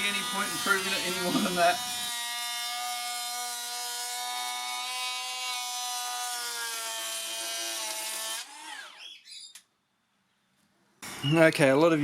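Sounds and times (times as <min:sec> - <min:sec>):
power planer whining: 0:00.0 - 0:09.1.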